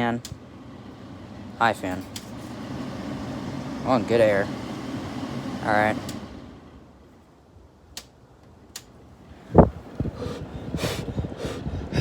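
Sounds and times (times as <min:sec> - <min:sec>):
wind buffeting on microphone: 0:09.3 - 0:12.0
sharp breath or sniff: 0:10.1 - 0:12.0.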